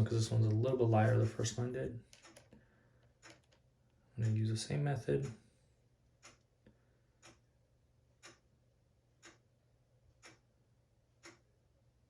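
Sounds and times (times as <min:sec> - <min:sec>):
faint ticking: 0:00.0 - 0:05.5, 0:06.2 - 0:07.6, 0:08.2 - 0:08.5, 0:09.1 - 0:09.5, 0:10.1 - 0:10.5, 0:11.1 - 0:11.5.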